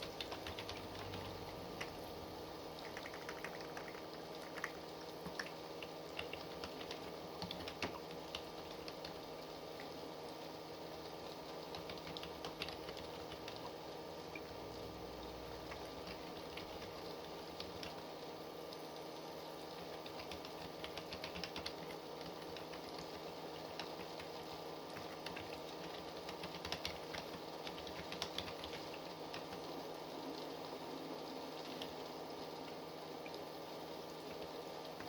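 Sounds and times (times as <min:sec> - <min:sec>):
typing on computer keyboard: 0:00.0 - 0:02.0, 0:02.8 - 0:09.2, 0:11.5 - 0:13.8, 0:15.6 - 0:18.1, 0:19.7 - 0:29.7
steady background hum: 0:00.0 - 0:35.0.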